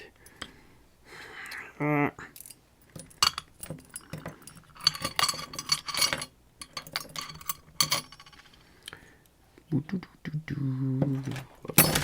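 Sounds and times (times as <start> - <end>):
small metal lock parts clinking: 2.4 - 8.6, 11.8 - 12.0.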